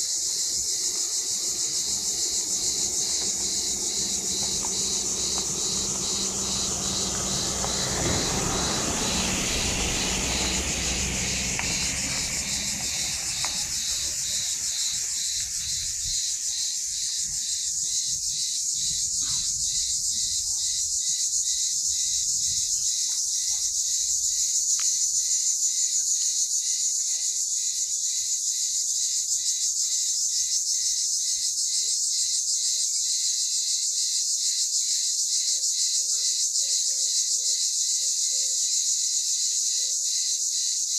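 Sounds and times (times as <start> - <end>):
crickets trilling: 0.0 - 40.9
low rumble: 1.5 - 14.1.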